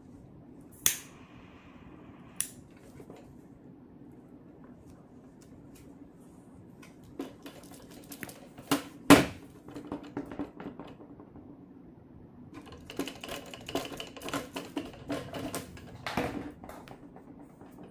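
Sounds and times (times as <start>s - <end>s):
clicks and knocks of handling: 12.6s - 17.9s.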